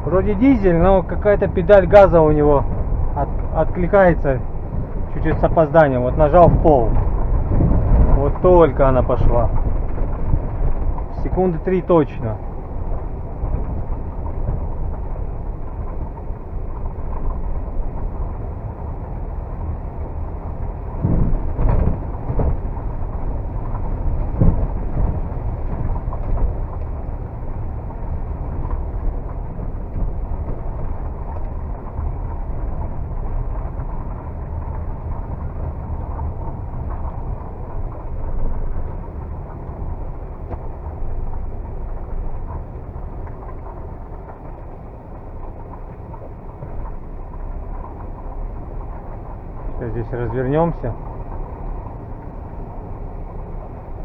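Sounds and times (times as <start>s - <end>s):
car engine and road noise: 0.0s - 54.0s.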